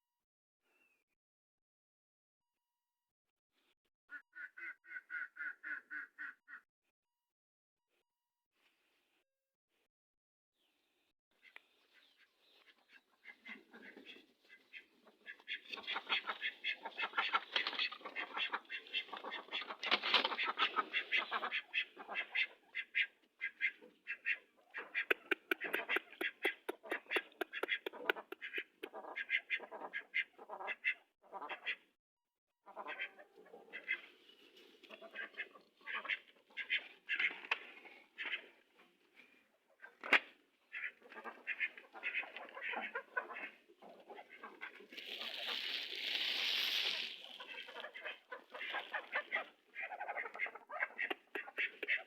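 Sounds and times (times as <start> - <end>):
birds calling rapidly: 11.4 - 31.5
chickens clucking: 11.5 - 31.8, 32.7 - 52.0
sharp clicks: 25.1 - 28.8.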